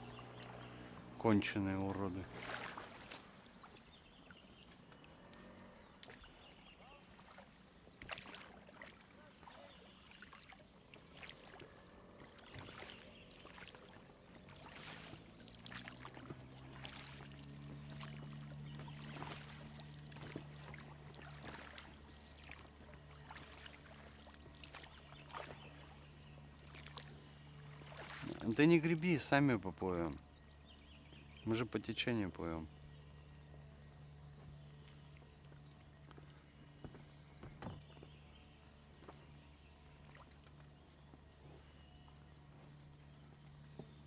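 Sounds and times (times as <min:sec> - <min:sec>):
oars splashing in water: 0:00.0 - 0:44.0.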